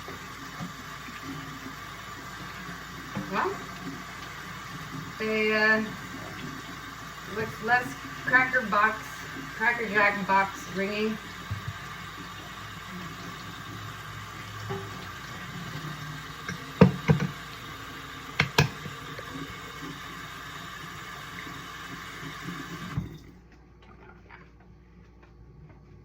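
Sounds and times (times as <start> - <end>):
tap running into sink: 0.0 - 5.2, 11.3 - 12.6, 13.2 - 20.0, 21.2 - 23.2
knocks against sink: 14.7 - 15.0, 16.5 - 17.4, 18.4 - 19.0.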